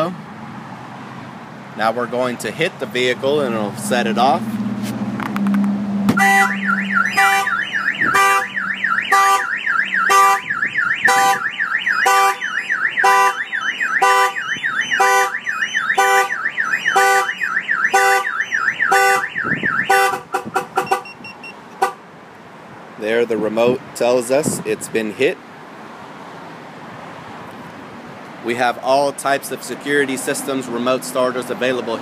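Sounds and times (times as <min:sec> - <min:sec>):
car alarm siren warbling: 0:05.4 - 0:22.0.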